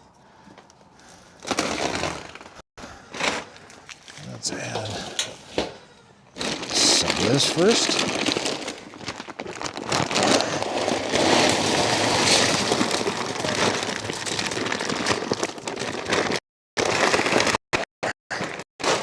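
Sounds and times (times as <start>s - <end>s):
grain pouring into a can: 6.4s - 17.5s.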